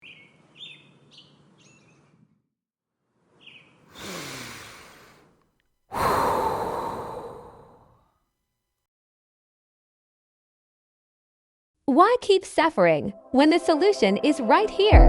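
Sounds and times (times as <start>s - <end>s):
breathy sigh: 3.9s - 5.3s, 5.9s - 8.0s.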